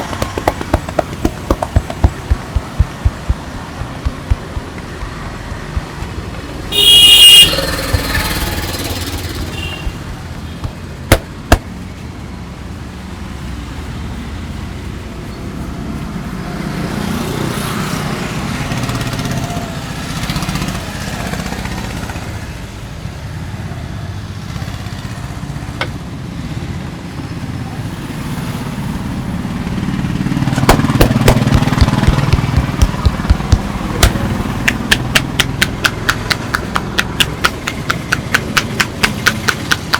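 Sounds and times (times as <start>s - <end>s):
quick hand taps: 0.0s - 7.0s, 9.8s - 11.7s, 30.6s - 39.9s
street traffic: 0.0s - 39.9s
vehicle horn blast: 6.7s - 10.1s.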